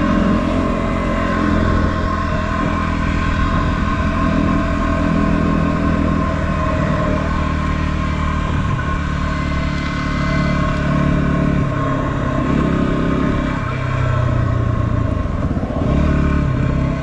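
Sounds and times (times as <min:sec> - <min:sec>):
motorcycle engine running: 0:00.0 - 0:17.0.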